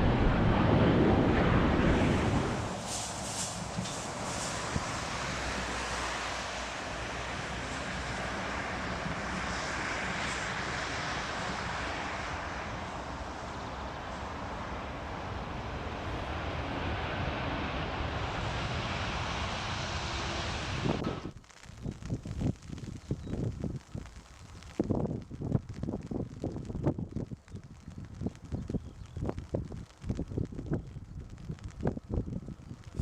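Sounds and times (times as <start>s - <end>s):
jet engines running: 0.0s - 21.3s.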